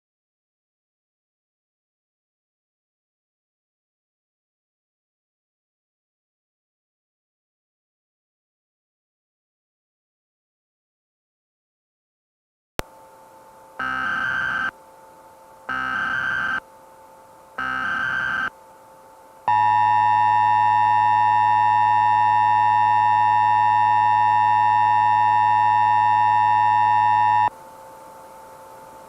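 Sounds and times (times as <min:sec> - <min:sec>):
digital header bursts: 0:13.8 - 0:14.7
two-tone attention signal: 0:19.5 - 0:27.5.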